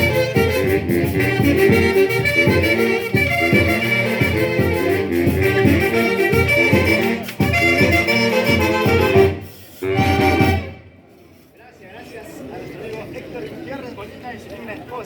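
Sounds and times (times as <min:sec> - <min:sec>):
folk orchestra playing lively tune: 0:00.0 - 0:11.0.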